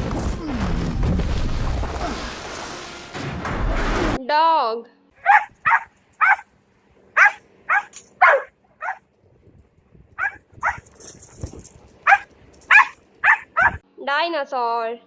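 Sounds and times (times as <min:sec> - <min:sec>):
dog barking: 0:05.2 - 0:06.4, 0:07.2 - 0:09.0, 0:10.2 - 0:10.8, 0:12.1 - 0:13.8.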